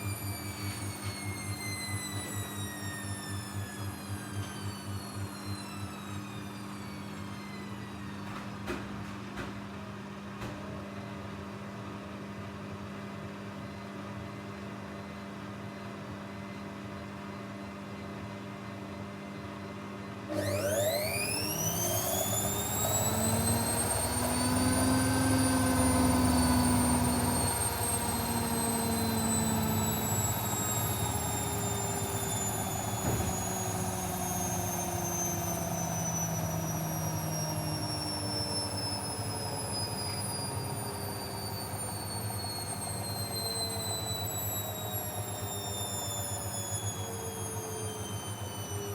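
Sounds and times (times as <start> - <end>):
motor whine during spin: 0.0 - 8.3, 20.2 - 48.9
washing machine humming: 20.2 - 48.0.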